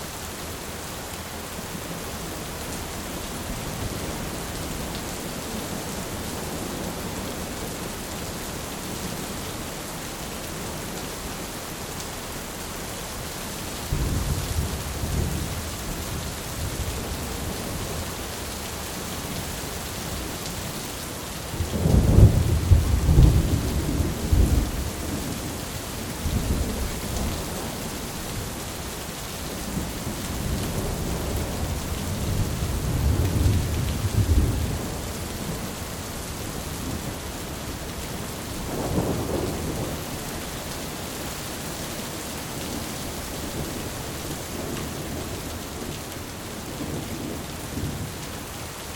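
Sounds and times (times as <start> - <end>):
heavy rain pouring: 0.0 - 48.9
thunder rumbling: 21.6 - 25.2.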